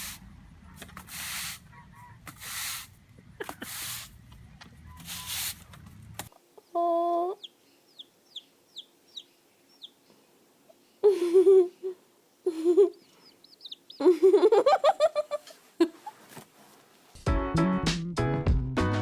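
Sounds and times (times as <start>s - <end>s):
chickens chirping and cackling: 1.6s - 2.2s, 6.6s - 15.6s.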